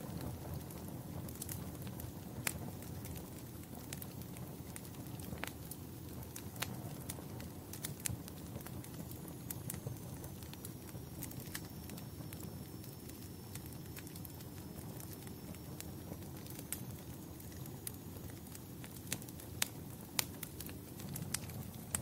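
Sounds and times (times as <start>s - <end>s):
fire crackling and popping: 0.0s - 22.0s
wood fire rumbling and hissing: 0.0s - 22.0s.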